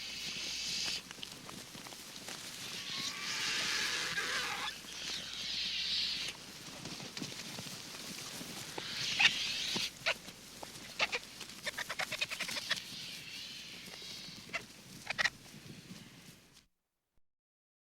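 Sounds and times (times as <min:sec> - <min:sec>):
steady high hiss: 0:00.0 - 0:01.0, 0:08.3 - 0:10.1, 0:12.0 - 0:15.0
birds and animals chirping: 0:02.6 - 0:06.4, 0:08.6 - 0:16.3.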